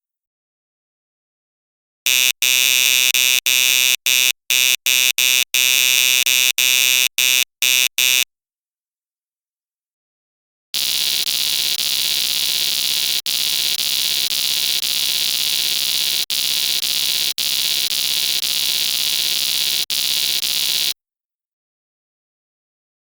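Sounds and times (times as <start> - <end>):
electronic error buzzer: 2.1 - 8.3, 10.8 - 21.0.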